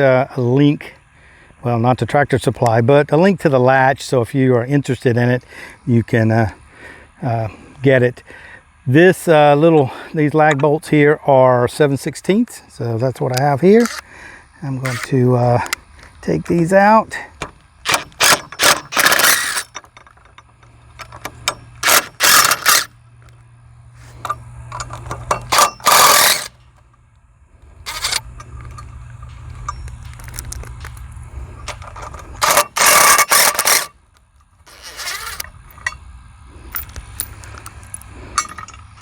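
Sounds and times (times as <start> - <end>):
steady low hum: 3.9 - 39.0
power tool bursts: 14.9 - 15.1, 17.8 - 19.8, 21.3 - 22.9, 25.3 - 26.6, 27.9 - 28.2, 31.7 - 33.9.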